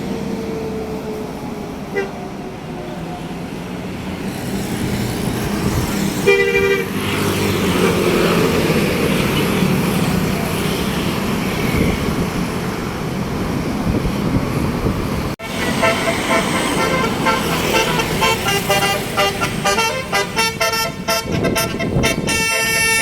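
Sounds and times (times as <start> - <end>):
passing bus engine and road noise: 0.0 - 23.0
bus horn blast: 1.9 - 2.2, 6.2 - 8.0, 15.4 - 23.0.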